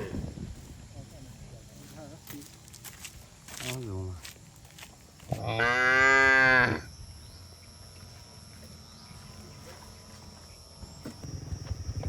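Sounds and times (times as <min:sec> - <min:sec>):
cow mooing: 0:05.5 - 0:06.9.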